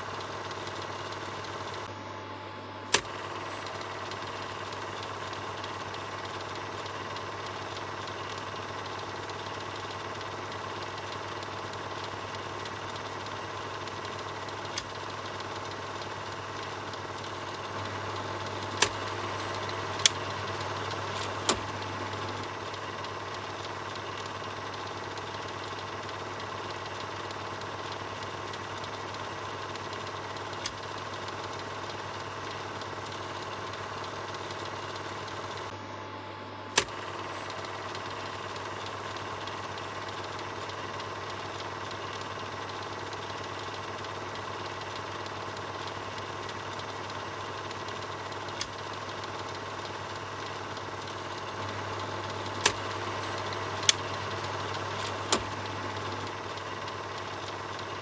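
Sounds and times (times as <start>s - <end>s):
film projector whirring: 0.0s - 58.0s
sharp clicks: 2.9s - 35.7s, 36.7s - 58.0s.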